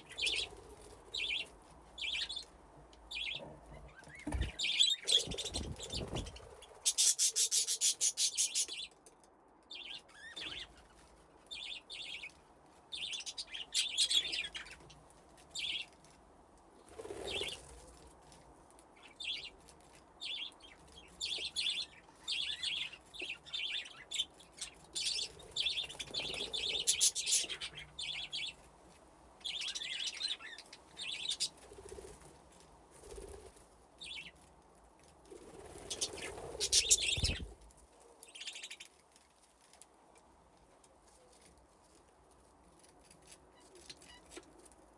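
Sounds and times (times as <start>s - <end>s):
budgies chirping and chattering: 0.1s - 0.5s, 4.0s - 8.9s, 21.2s - 28.5s, 35.8s - 37.5s.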